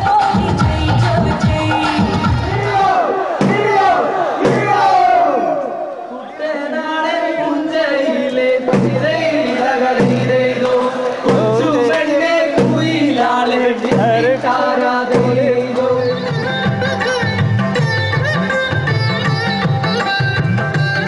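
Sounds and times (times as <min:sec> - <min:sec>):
steady drum beat: 0:00.0 - 0:05.3, 0:08.7 - 0:15.8
voices singing: 0:00.0 - 0:17.4.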